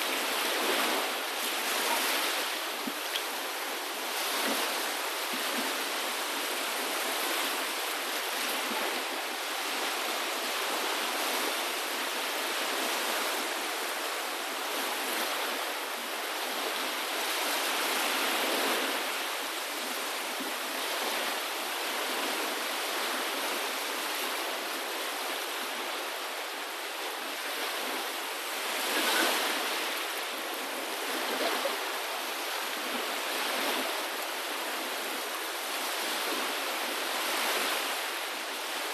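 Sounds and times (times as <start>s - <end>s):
water rushing: 0.0s - 16.4s, 25.4s - 38.9s.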